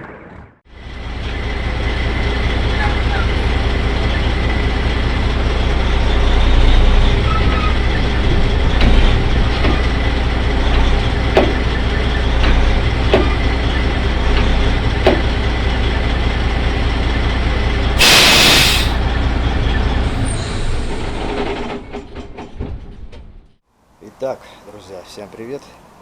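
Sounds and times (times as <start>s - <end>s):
truck engine running: 0.8s - 19.7s
air hiss: 18.0s - 19.0s.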